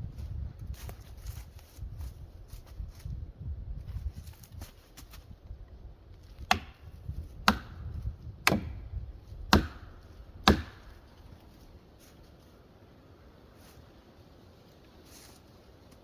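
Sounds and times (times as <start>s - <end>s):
heavy chopping into wood: 6.3s - 11.0s.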